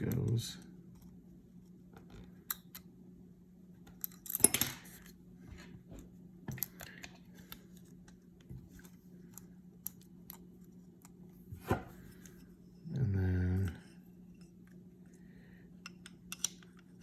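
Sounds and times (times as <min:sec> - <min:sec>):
pistol parts clicking and rattling: 0:03.9 - 0:05.0, 0:15.9 - 0:17.0.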